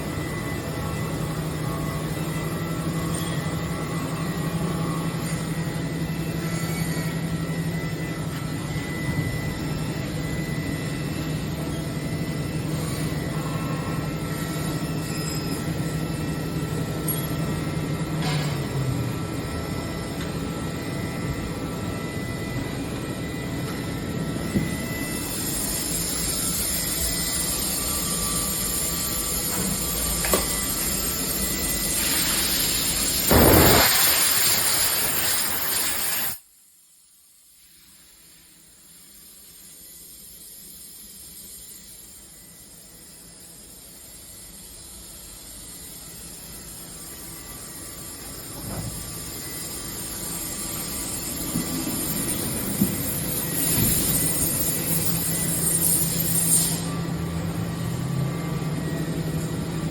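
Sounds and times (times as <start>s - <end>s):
milling machine humming: 0.0s - 36.2s
loud rush of air: 33.3s - 36.4s.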